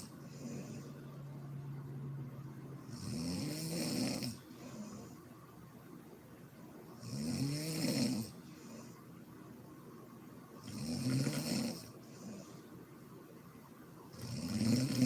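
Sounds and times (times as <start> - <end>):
woman snoring: 2.9 - 5.2, 7.0 - 8.4, 10.6 - 12.5, 14.1 - 15.0.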